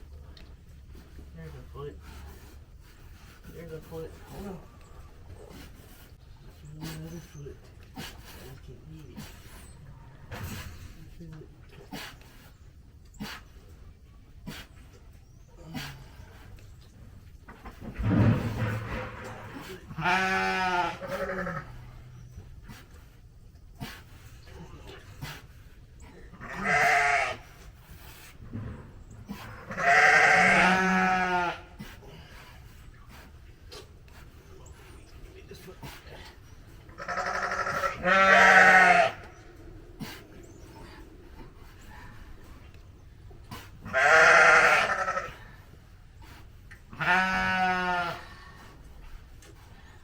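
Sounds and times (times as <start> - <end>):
sheep bleating: 19.9 - 21.7, 26.4 - 27.4, 29.6 - 31.7, 37.0 - 39.3, 43.9 - 45.3, 46.9 - 48.2.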